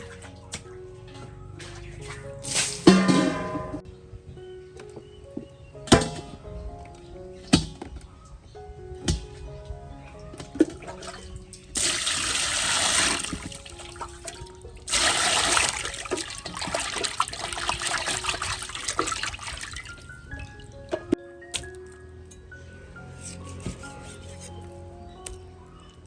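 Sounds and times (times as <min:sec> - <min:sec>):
soft background music: 0:00.0 - 0:26.0
water pouring and splashing: 0:01.6 - 0:03.6, 0:10.5 - 0:20.7.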